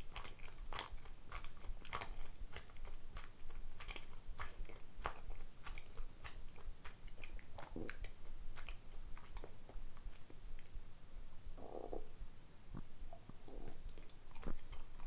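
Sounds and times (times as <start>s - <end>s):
close chewing with wet mouth clicks: 0.0s - 10.8s, 11.6s - 15.0s.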